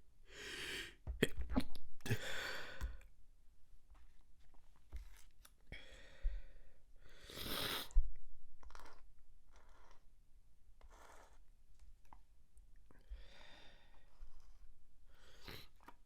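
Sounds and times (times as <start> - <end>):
person gasping: 0.3 - 1.1, 2.0 - 3.0.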